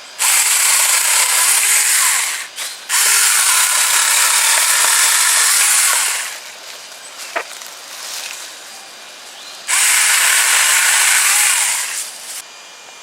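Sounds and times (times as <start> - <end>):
electric chainsaw cutting wood: 0.0 - 6.4, 9.7 - 12.4.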